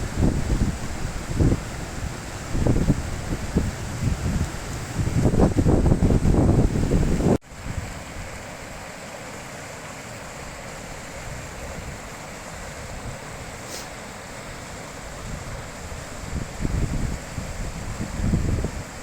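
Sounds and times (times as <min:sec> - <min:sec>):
wind rumble on microphone: 0:00.0 - 0:08.4, 0:11.2 - 0:13.6, 0:15.1 - 0:19.0
mountain river rushing: 0:00.0 - 0:19.0.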